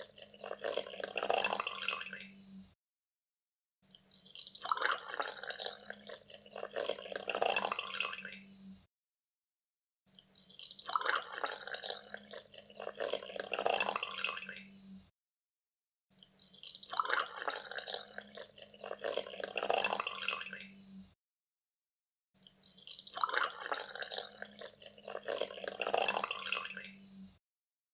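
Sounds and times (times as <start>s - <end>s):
coffee pouring: 0.0s - 2.4s, 4.2s - 8.5s, 10.5s - 14.7s, 16.6s - 20.8s, 22.8s - 27.0s.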